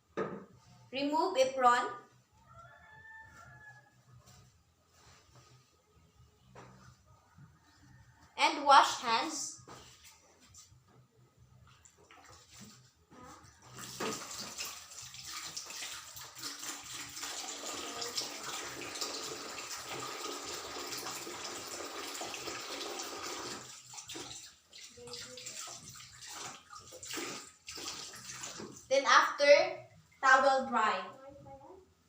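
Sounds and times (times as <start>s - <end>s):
tap water splashing over hands: 13.7s - 28.8s.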